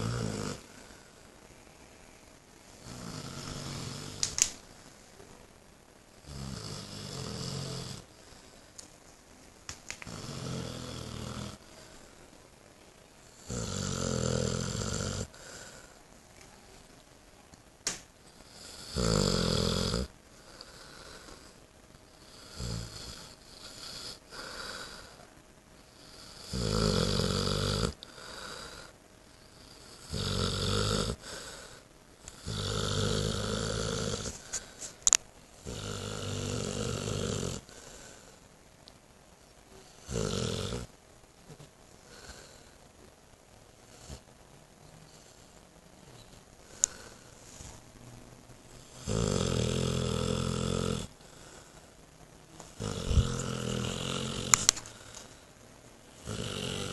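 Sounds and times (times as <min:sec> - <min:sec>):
dog snoring: 0:00.0 - 0:01.1, 0:02.8 - 0:04.4, 0:06.2 - 0:08.4, 0:10.0 - 0:12.1, 0:13.3 - 0:15.9, 0:18.4 - 0:21.6, 0:22.2 - 0:25.2, 0:25.9 - 0:34.8, 0:35.6 - 0:38.4, 0:39.8 - 0:40.9, 0:42.0 - 0:42.8, 0:48.8 - 0:51.8, 0:52.6 - 0:55.1, 0:56.1 - 0:56.9.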